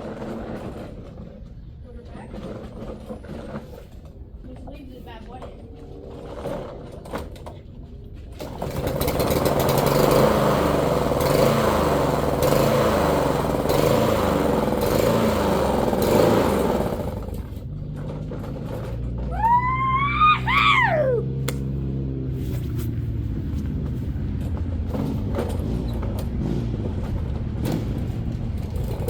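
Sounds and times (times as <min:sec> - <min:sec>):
lawn mower engine running: 0:00.0 - 0:04.1, 0:08.3 - 0:29.0
high-pitched wail: 0:19.3 - 0:21.3.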